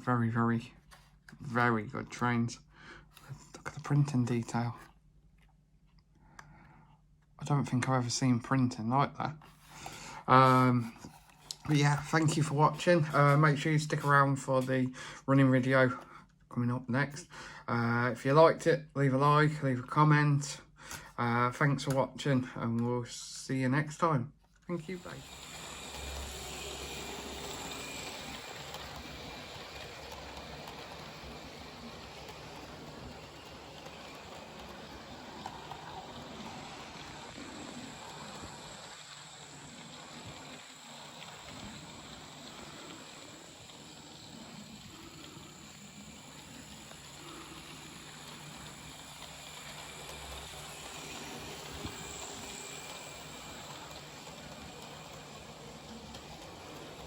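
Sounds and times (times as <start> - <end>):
model train motor hum: 24.7 - 57.0
wheels rumbling on rails: 24.9 - 57.0.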